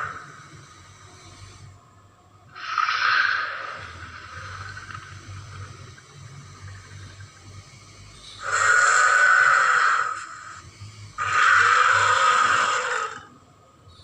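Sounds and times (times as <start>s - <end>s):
low breathing-like background: 0.0s - 14.0s
dinosaur breathy calls: 2.6s - 4.9s, 8.4s - 10.6s, 11.2s - 13.3s.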